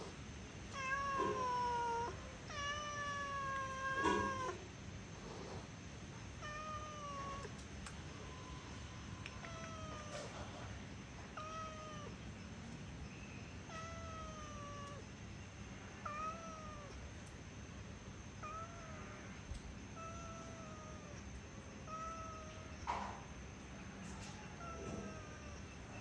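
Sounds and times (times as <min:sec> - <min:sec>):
cat meowing: 0:00.7 - 0:04.6, 0:06.4 - 0:07.6, 0:08.2 - 0:10.6, 0:11.3 - 0:12.3, 0:13.7 - 0:15.1, 0:16.0 - 0:17.0, 0:18.4 - 0:23.3, 0:24.0 - 0:26.0.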